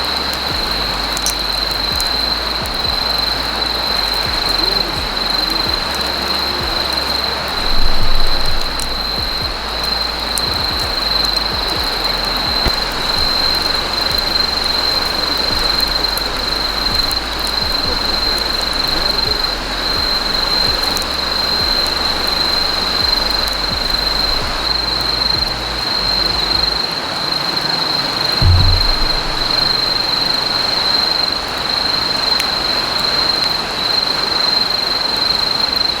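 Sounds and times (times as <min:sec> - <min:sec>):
fire hissing: 0:00.0 - 0:27.7
campfire crackling: 0:00.0 - 0:36.0
insects trilling: 0:00.0 - 0:36.0
high-pitched whine: 0:28.4 - 0:31.0.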